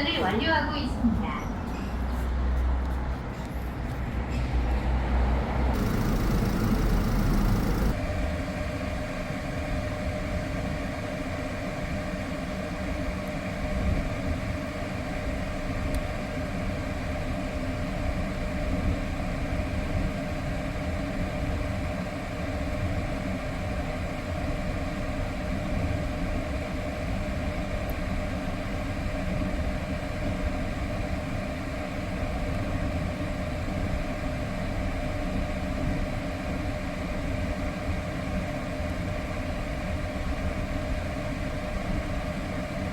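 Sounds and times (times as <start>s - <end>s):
air conditioning hum: 0.0s - 42.9s
car engine idling: 5.8s - 8.0s.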